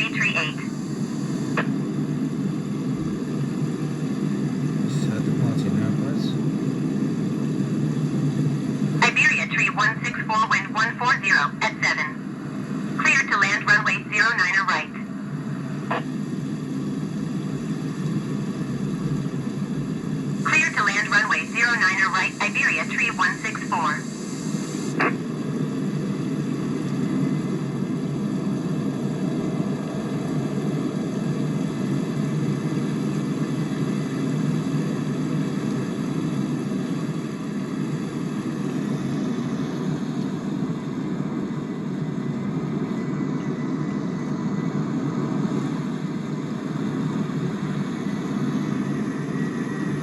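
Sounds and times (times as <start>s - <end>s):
distant jet engines rumbling: 0.0s - 1.6s, 4.4s - 16.8s, 20.0s - 25.1s.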